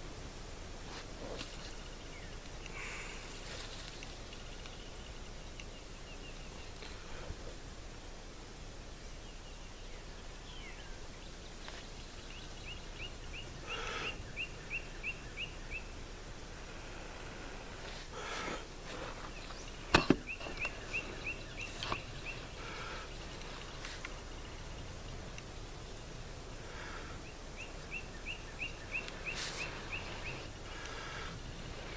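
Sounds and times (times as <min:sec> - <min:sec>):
outdoor background hiss: 0:00.0 - 0:31.9
rustling: 0:00.8 - 0:05.0, 0:16.5 - 0:25.6, 0:29.0 - 0:31.9
bird chirping: 0:01.6 - 0:07.3, 0:09.1 - 0:16.1, 0:18.1 - 0:31.9.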